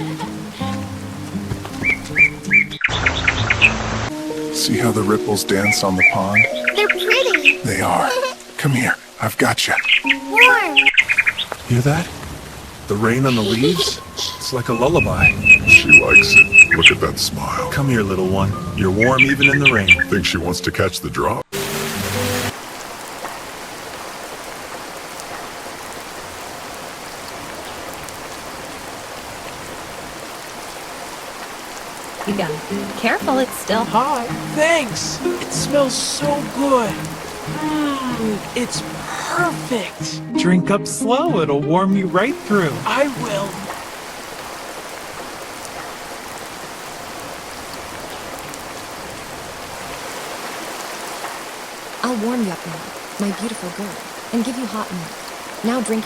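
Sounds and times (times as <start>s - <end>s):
steady rain: 0.0s - 20.6s, 21.4s - 40.3s, 41.8s - 56.0s
drops ticking: 30.3s - 40.3s, 41.9s - 48.7s.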